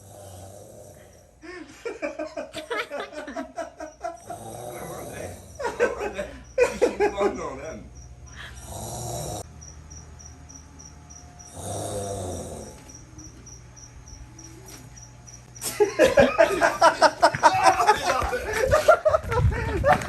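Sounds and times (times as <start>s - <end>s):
man fake snoring: 0.0s - 1.4s, 4.2s - 5.9s, 8.4s - 9.5s, 11.4s - 13.1s.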